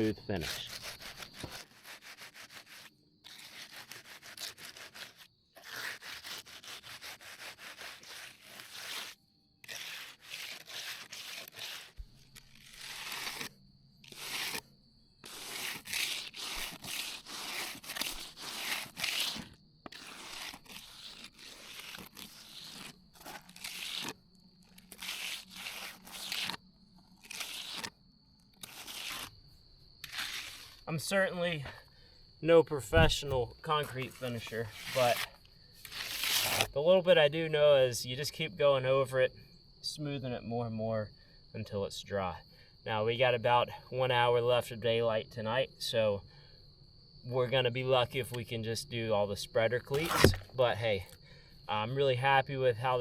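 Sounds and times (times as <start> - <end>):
trowel scraping wet concrete: 0.0 - 27.9, 28.6 - 29.4, 30.0 - 31.8, 32.8 - 36.8, 49.8 - 50.6.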